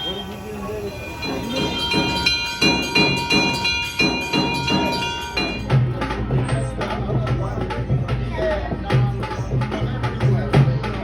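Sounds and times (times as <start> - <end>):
metal bells ringing: 0.0 - 6.8
music with drums: 0.8 - 11.0.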